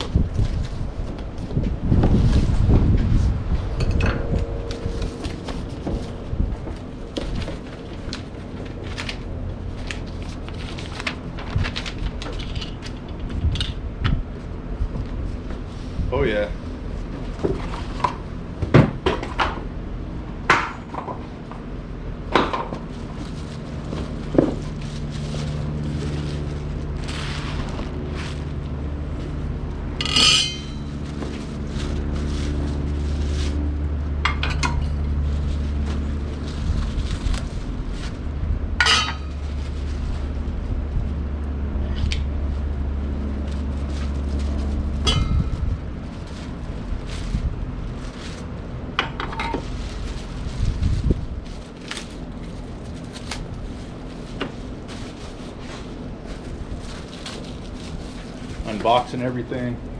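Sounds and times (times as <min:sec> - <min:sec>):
steady low hum: 0:00.0 - 0:59.9
metal parts clinking and knocking: 0:30.0 - 0:30.9
sharp metal clanks: 0:30.0 - 0:30.9.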